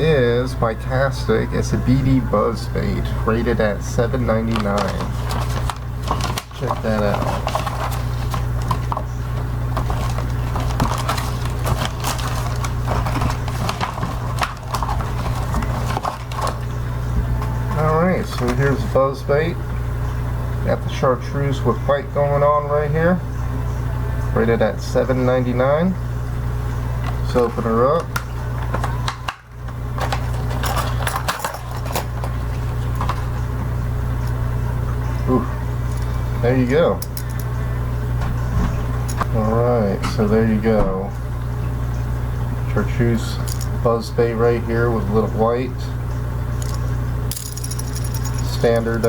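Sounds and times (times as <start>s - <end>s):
steady low hum: 0.0s - 49.0s
plastic packaging clicks and crinkles: 9.8s - 16.7s.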